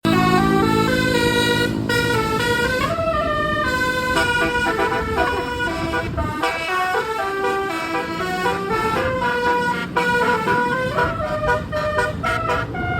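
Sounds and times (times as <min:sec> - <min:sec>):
musical bus horns playing melody: 0:00.0 - 0:12.9.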